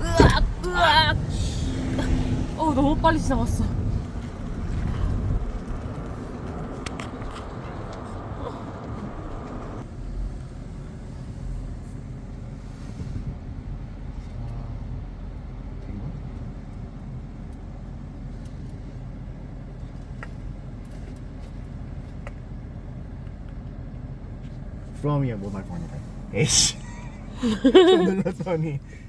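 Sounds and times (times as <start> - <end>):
road and tyre noise in car: 0.0 - 29.0.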